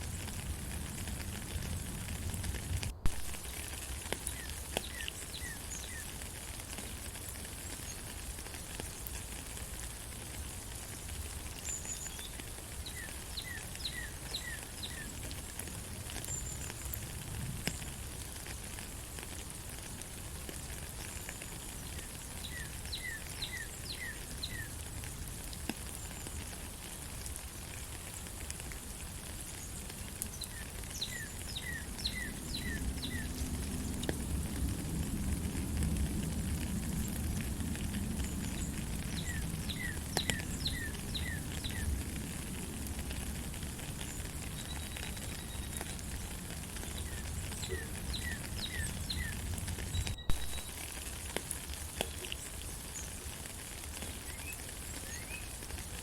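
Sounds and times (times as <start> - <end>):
steady rain: 0.0 - 56.0
bird chirping: 46.9 - 50.8.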